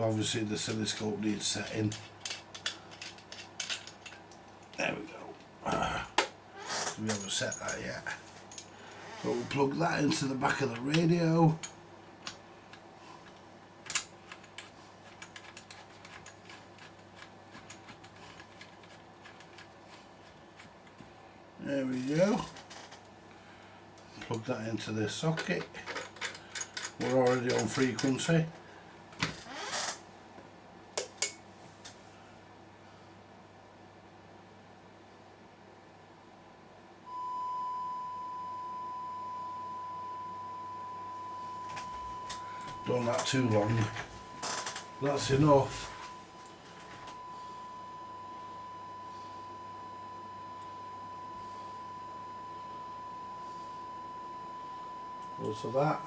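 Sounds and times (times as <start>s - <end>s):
electrical hum and hiss: 0.0s - 56.0s
steady test tone beep: 37.1s - 56.0s.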